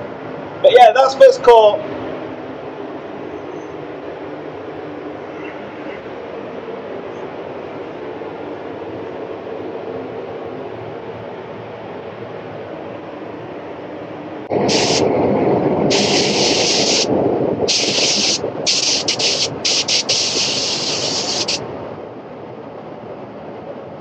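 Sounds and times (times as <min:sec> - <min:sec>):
heavy rush of air: 0:00.0 - 0:24.0
steady background air noise: 0:00.0 - 0:24.0
spray gun hissing: 0:14.5 - 0:15.1, 0:15.9 - 0:17.1, 0:17.7 - 0:21.6.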